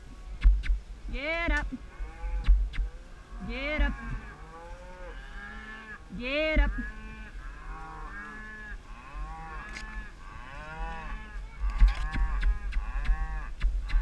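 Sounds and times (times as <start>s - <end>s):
low thumps: 0.0s - 2.9s
cattle mooing: 1.8s - 13.5s
sharp clicks: 11.6s - 14.0s.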